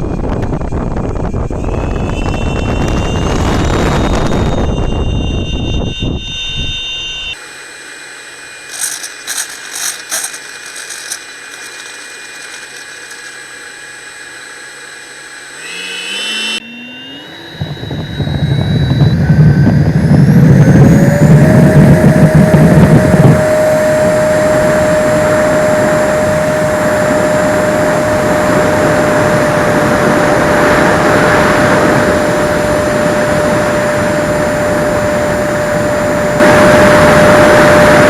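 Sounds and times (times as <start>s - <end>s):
wind buffeting: 0.0s - 6.8s, 17.6s - 38.0s
model jet engine whine: 0.0s - 38.0s.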